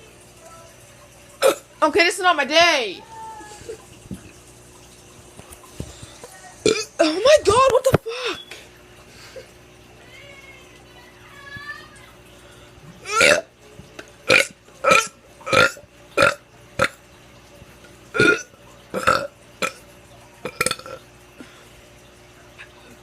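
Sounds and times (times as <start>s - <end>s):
teenager burping: 1.4s - 1.7s, 6.6s - 7.0s, 13.0s - 13.5s, 14.3s - 17.0s, 18.2s - 19.8s, 20.5s - 21.0s.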